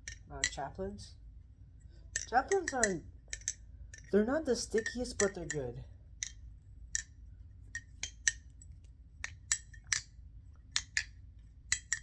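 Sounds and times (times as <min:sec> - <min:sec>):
butterfly knife clacking: 0:02.2 - 0:06.4, 0:07.8 - 0:08.5, 0:11.7 - 0:12.0.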